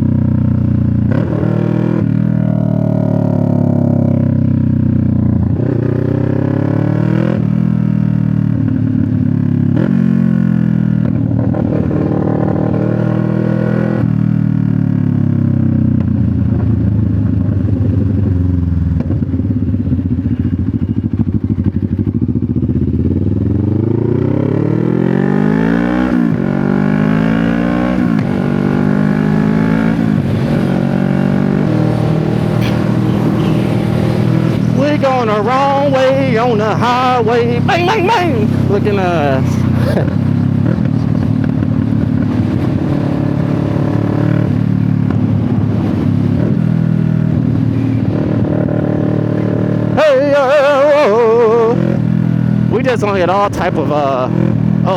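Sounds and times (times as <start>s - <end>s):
motorcycle engine shifting gears: 0.0s - 54.9s.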